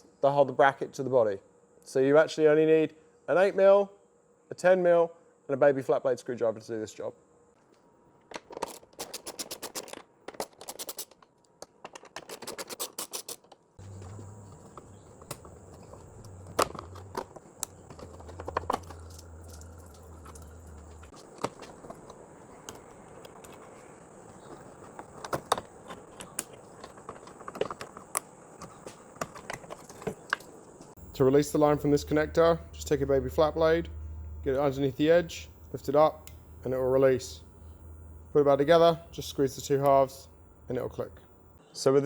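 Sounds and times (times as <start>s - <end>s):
tools and metal parts handled: 8.3s - 31.2s
low hum: 13.8s - 21.1s, 31.0s - 41.6s.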